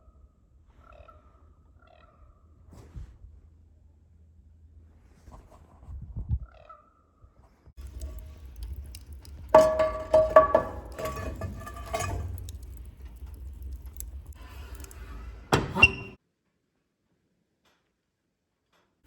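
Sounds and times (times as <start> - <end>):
kitchenware clinking: 7.8 - 16.2.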